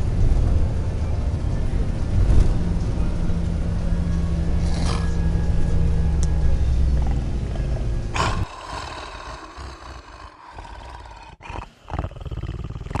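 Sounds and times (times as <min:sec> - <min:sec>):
man snoring: 0:04.6 - 0:05.1, 0:07.0 - 0:13.0.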